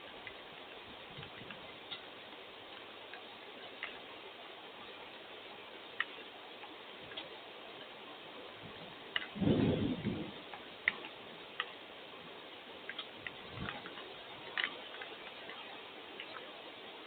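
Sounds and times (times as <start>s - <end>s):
faint steady hiss: 0.0s - 17.0s
rainwater dripping: 0.0s - 17.0s
low rumble: 8.7s - 10.4s.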